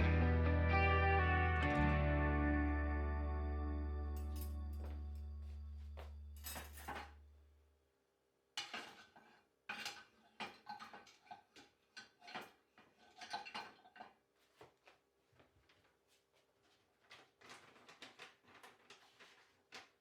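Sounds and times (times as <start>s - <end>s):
cutlery and dishes clinking: 6.0s - 7.2s.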